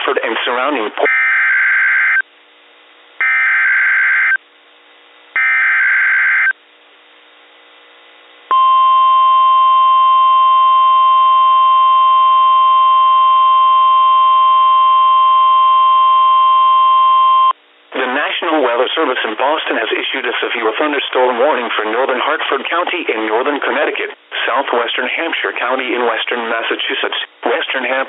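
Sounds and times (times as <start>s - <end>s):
faint radio hiss: 0.0s - 1.1s, 17.6s - 28.0s
steady warning alarm tone: 1.1s - 2.2s, 3.2s - 4.4s, 5.4s - 6.6s, 8.5s - 17.5s.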